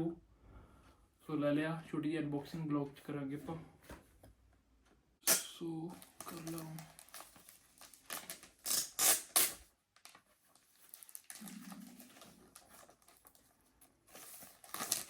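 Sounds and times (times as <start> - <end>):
plastic wrapping crinkling: 5.9 - 15.0.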